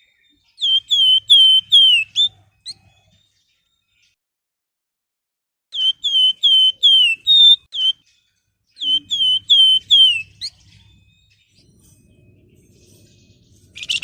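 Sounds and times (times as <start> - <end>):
bird singing whistled phrases: 0.6 - 2.4, 5.7 - 8.1, 8.8 - 10.6.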